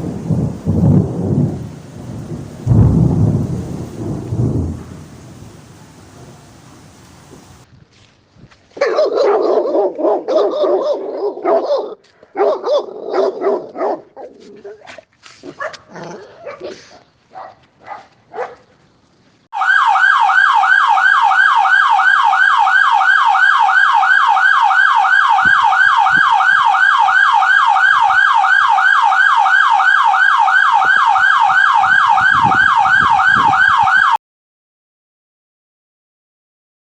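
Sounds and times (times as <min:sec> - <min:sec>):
dog barking: 0:08.8 - 0:18.7
siren in a fast yelp: 0:19.6 - 0:34.2.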